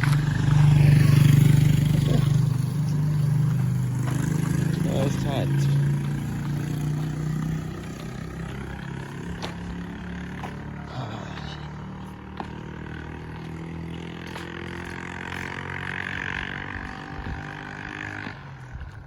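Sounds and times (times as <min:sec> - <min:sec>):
vehicle engine running: 0:00.0 - 0:19.0.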